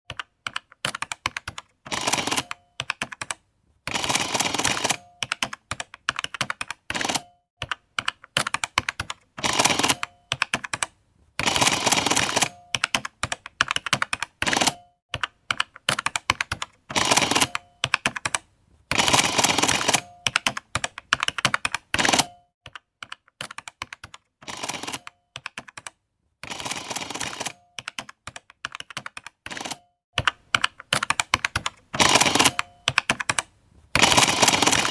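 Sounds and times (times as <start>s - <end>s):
calculator keys clicking: 0.1s - 18.4s, 19.0s - 34.9s
print mechanism running: 34.0s - 34.9s.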